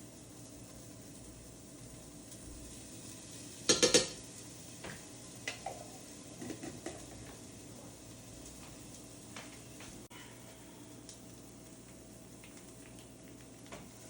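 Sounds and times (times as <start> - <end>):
pots and pans rattling: 3.7 - 4.2, 5.4 - 7.4.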